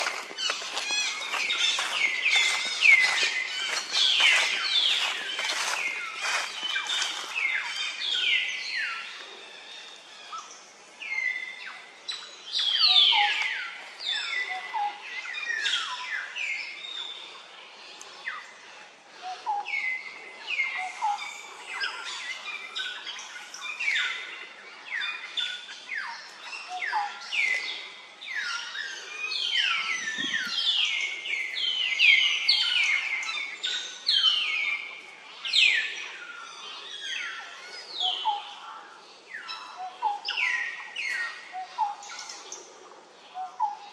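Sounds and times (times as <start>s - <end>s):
high-pitched chirping calls: 0.0s - 7.3s.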